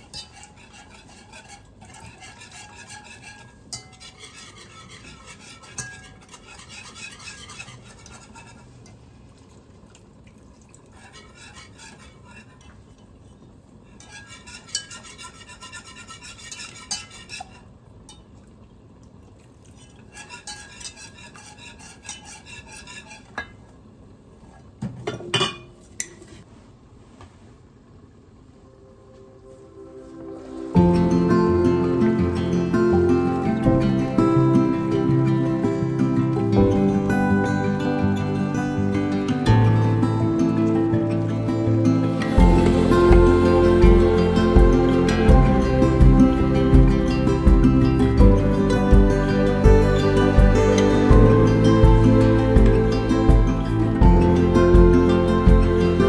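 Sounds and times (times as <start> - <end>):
utensil scraping in a pot: 0.0 - 9.5, 10.8 - 13.1, 13.8 - 17.7, 19.7 - 23.8, 34.2 - 56.0
cookware clattering: 25.1 - 26.2.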